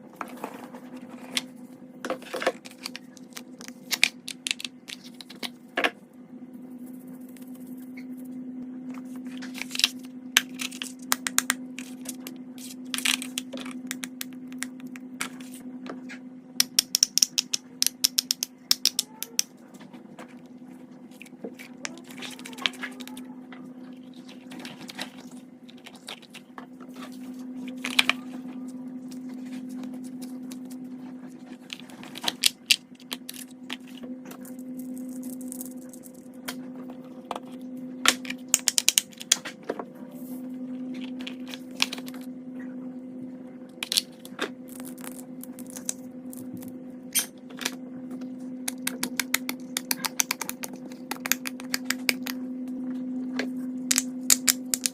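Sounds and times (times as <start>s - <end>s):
steady low hum: 0.0s - 54.9s
fidget toys clicking: 16.6s - 19.5s.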